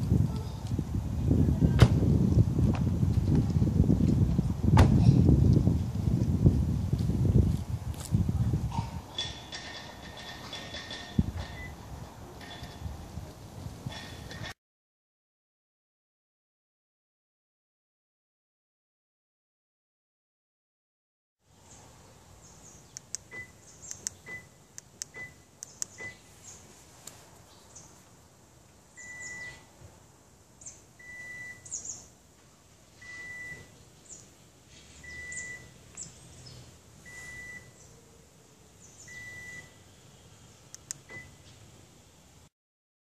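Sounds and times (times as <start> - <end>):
clicks: 22.9 - 26.2
electronic beeper beeps: 29.0 - 29.6, 35.1 - 35.7, 37.1 - 37.8, 39.1 - 39.8.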